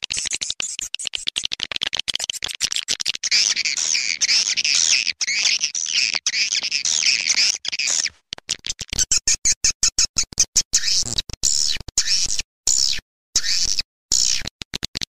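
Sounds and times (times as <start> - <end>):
fast run of clicks: 0.0 - 9.0
high-pitched twittering chatter: 2.1 - 8.1.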